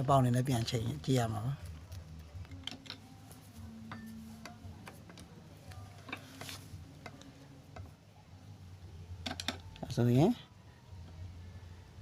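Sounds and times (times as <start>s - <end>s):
small metal parts clicking: 1.7s - 3.1s, 9.2s - 9.9s.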